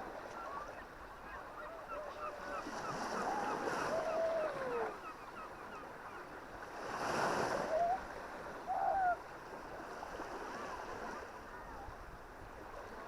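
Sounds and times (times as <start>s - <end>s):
waves washing onto shore: 5.9s - 13.0s.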